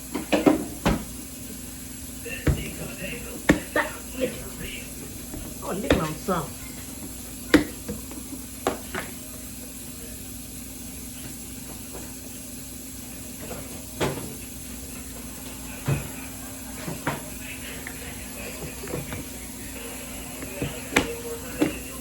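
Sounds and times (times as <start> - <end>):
steady low hum: 0.0 - 22.0
kitchen things knocking and clacking: 2.4 - 6.5.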